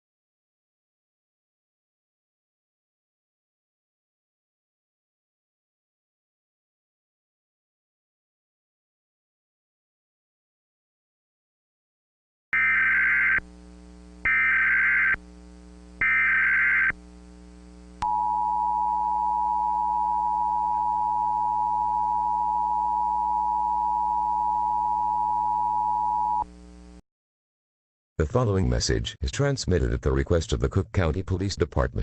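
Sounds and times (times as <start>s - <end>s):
buzzy digital data bursts: 12.6s - 18.0s.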